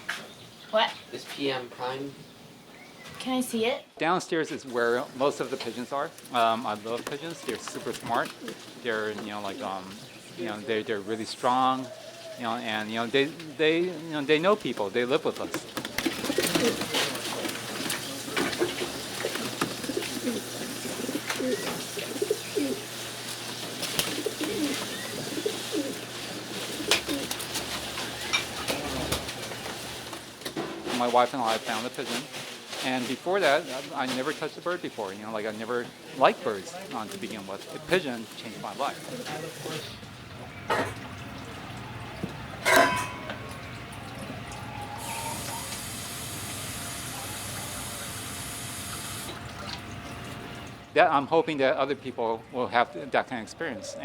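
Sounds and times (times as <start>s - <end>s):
pigeons cooing: 5.1s - 30.3s, 37.0s - 50.8s, 52.6s - 54.0s
water running from a tap: 45.0s - 50.8s.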